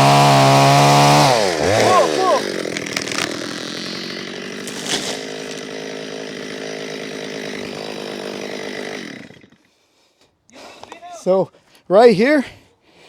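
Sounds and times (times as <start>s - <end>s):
chainsaw cutting tree trunk: 0.0s - 9.8s.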